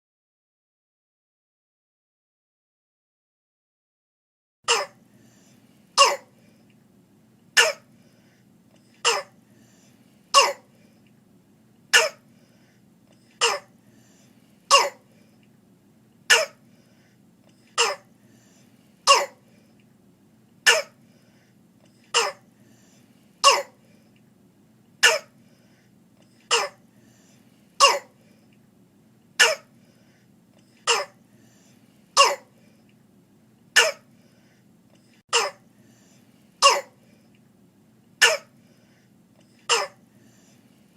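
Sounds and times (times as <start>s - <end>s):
child barking cough: 4.7s - 5.0s, 6.0s - 6.4s, 7.6s - 7.9s, 9.0s - 9.4s, 10.4s - 10.7s, 11.9s - 12.2s, 13.4s - 13.7s, 14.7s - 15.1s, 16.3s - 16.6s, 17.8s - 18.1s, 19.1s - 19.4s, 20.6s - 21.0s, 22.1s - 22.5s, 23.4s - 23.8s, 25.0s - 25.4s, 26.5s - 26.8s, 27.8s - 28.2s, 29.4s - 29.7s, 30.8s - 31.2s, 32.2s - 32.5s, 33.8s - 34.1s, 35.3s - 35.6s, 36.6s - 37.0s, 38.2s - 38.5s, 39.7s - 40.0s.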